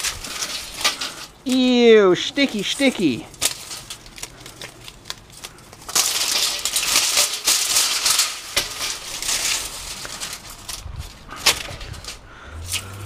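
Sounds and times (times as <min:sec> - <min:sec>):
metal blind slats rattling and clicking: 0:05.8 - 0:13.0.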